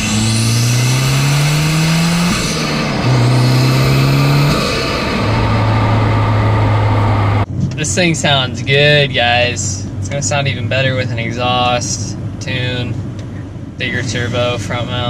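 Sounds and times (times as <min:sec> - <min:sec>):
car engine accelerating: 0:00.0 - 0:07.5.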